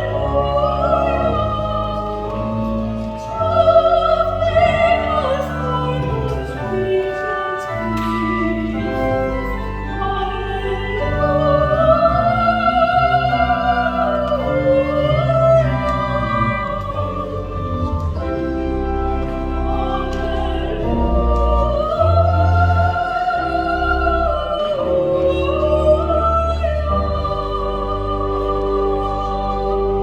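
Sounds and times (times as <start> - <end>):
soprano singing with vibrato: 0.0 - 18.1, 19.7 - 30.0
sustained organ chords: 0.0 - 30.0.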